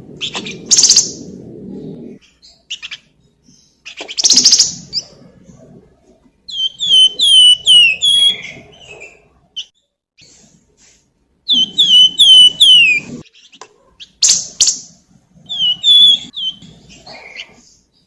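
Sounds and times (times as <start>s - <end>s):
bird whistled song: 0.2s - 1.2s, 2.2s - 5.1s, 6.5s - 10.4s, 11.4s - 17.8s.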